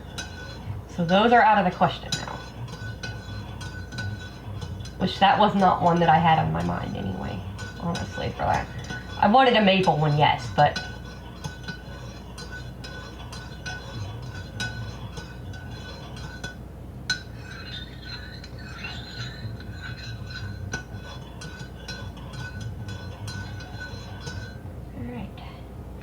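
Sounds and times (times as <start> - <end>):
spoon clinking in a mug: 0.0 - 24.6.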